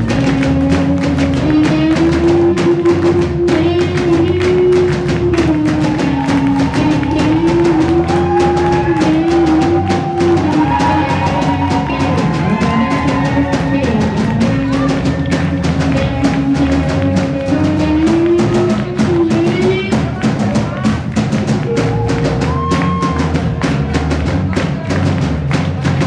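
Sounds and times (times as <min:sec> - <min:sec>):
live rock band playing: 0:00.0 - 0:25.6
drum kit steady beat: 0:00.0 - 0:26.0
sliding melodic line: 0:21.7 - 0:23.9.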